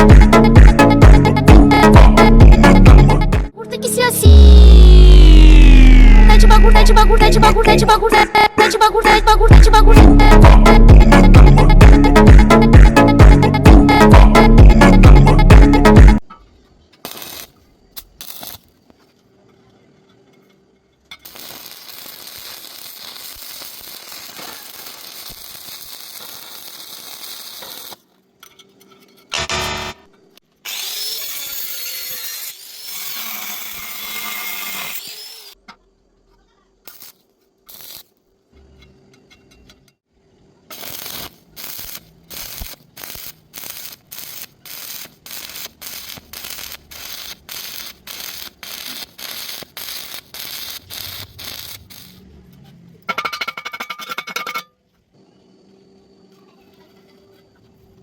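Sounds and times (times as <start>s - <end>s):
loud short burst: 4.2s - 7.7s
power tool running: 29.4s - 30.1s.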